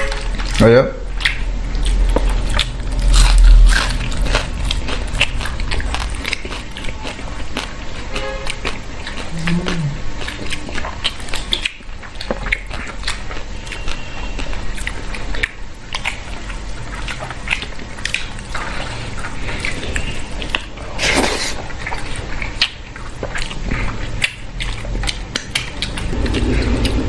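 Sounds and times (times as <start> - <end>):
chewing and mouth sounds: 0.0 - 27.0
loud noisy sound: 25.9 - 27.0.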